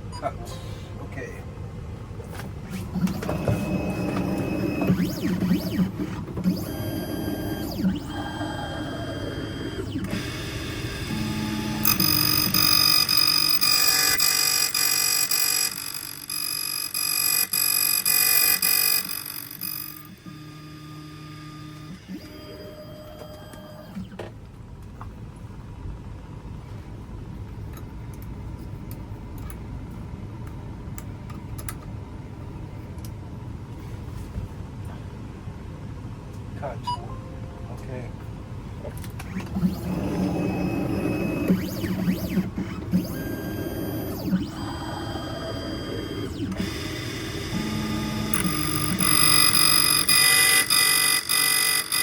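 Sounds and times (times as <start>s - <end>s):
key-cutting machine motor whine: 2.7s - 24.2s, 39.0s - 52.0s
high-pitched key cutting noise: 9.9s - 20.7s, 48.3s - 52.0s.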